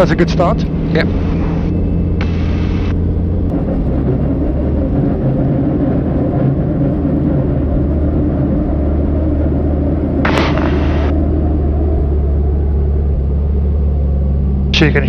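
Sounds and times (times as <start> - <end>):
helicopter piston engine running: 10.3 - 11.1.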